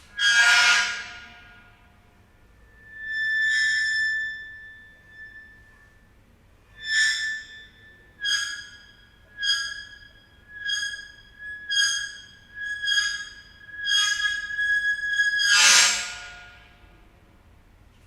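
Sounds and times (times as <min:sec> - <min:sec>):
metal screeching on ceramic tile: 0:06.8 - 0:16.4.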